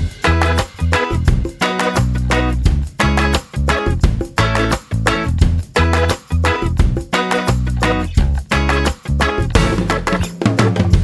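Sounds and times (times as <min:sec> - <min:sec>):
upbeat music with drums bass guitar: 0:00.0 - 0:11.0.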